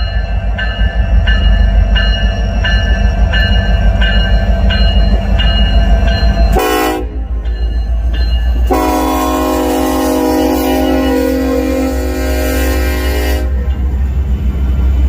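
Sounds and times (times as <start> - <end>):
train rumbling and clattering: 0.0 - 15.0
locomotive air horn blasts: 6.6 - 7.3, 8.7 - 13.6.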